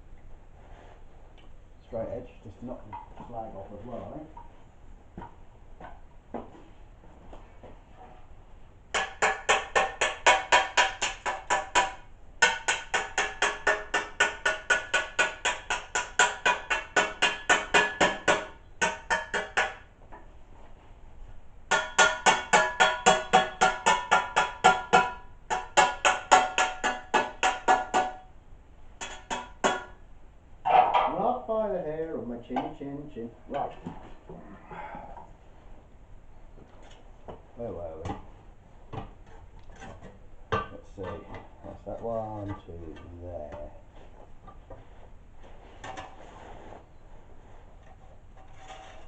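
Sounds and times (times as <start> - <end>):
hammer blows on sheet steel: 8.9 - 19.9.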